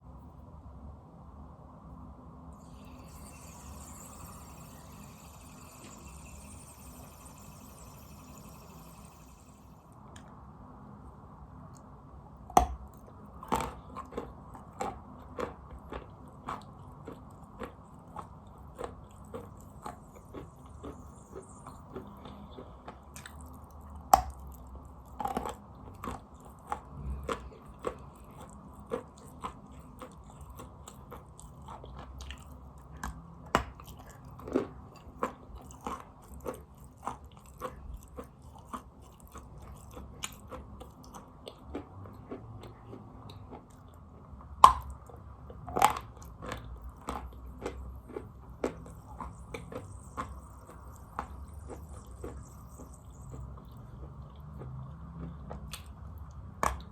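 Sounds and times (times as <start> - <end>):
person chewing chalk: 12.5 - 56.9.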